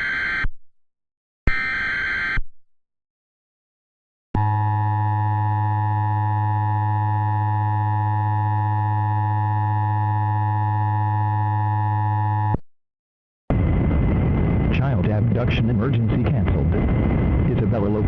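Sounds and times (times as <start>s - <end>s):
electronic two-tone alarm: 0.0s - 0.5s, 1.5s - 2.4s
low hum: 4.4s - 12.6s, 13.5s - 18.0s.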